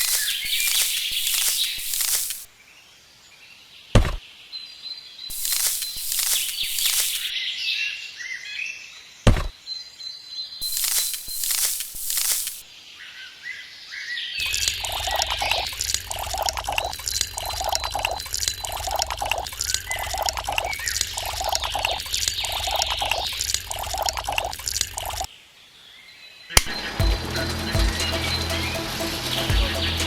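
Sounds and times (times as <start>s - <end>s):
birds chirping: 0.0s - 2.5s, 5.2s - 7.6s, 8.9s - 25.3s, 26.0s - 30.0s
sharp click: 0.0s - 2.5s, 5.3s - 7.3s, 10.6s - 12.6s.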